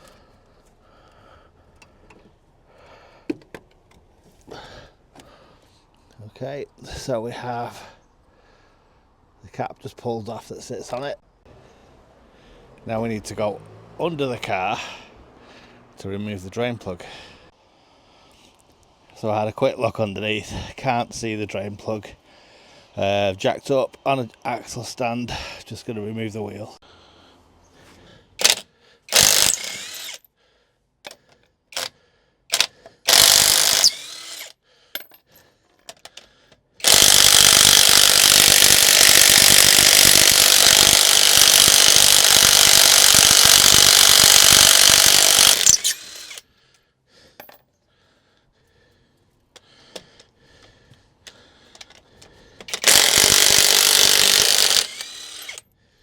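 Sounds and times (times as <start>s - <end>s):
impact wrench hammering: 52.6s - 55.6s.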